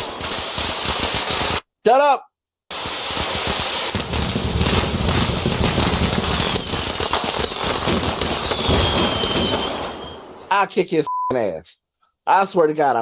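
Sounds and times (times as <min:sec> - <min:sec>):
firecrackers crackling: 0:00.0 - 0:01.6, 0:02.7 - 0:10.5
faint falling whistle: 0:06.4 - 0:10.5.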